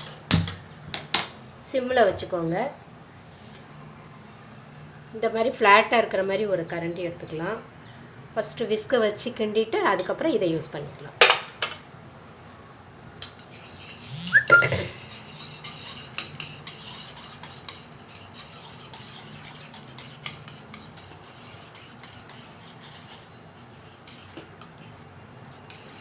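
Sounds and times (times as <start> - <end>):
whisk scraping in metal pan: 13.4 - 24.7, 25.5 - 26.0.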